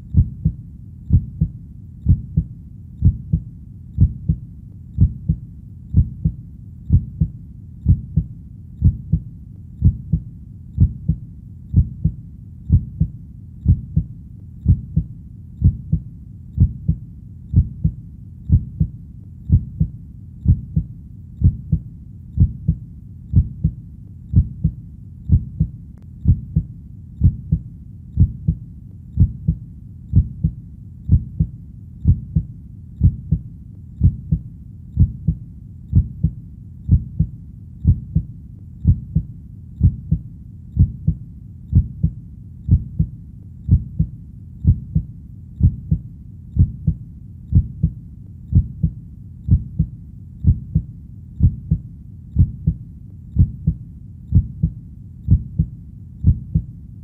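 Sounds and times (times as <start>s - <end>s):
heartbeat thumps: 0.0s - 4.4s, 5.0s - 56.7s
continuous low rumble: 0.0s - 57.0s.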